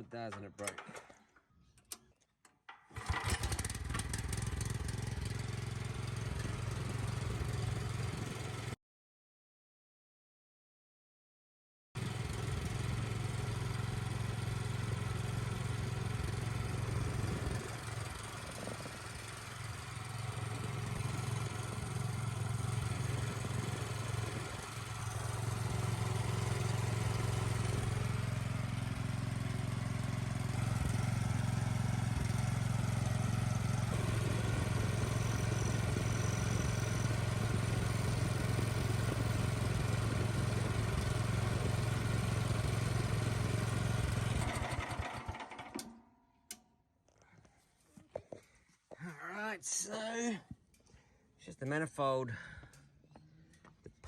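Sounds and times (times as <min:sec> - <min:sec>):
pressure washer engine running: 0:03.0 - 0:08.7, 0:12.0 - 0:45.9.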